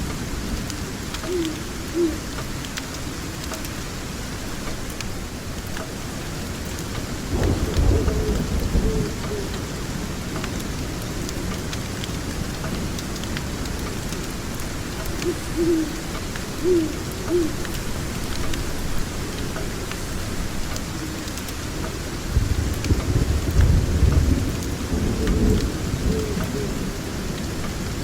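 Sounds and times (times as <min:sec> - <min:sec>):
steady rain falling: 0:00.0 - 0:28.0
low roll of thunder: 0:07.2 - 0:10.4, 0:22.3 - 0:28.0.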